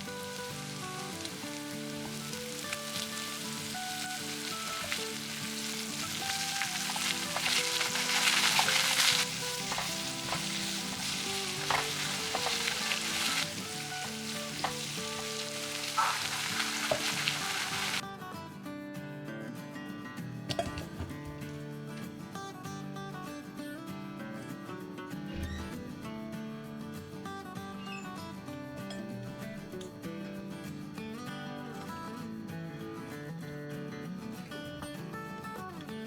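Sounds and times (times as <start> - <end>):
pot hissing and sizzling: 0.0 - 18.0.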